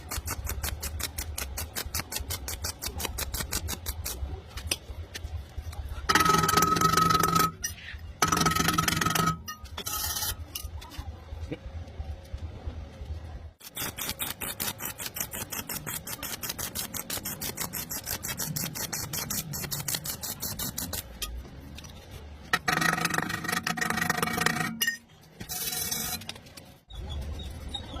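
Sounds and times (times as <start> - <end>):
arc welding crackle: 0.0 - 4.8, 13.6 - 21.2
steady pitched hum: 2.3 - 26.9.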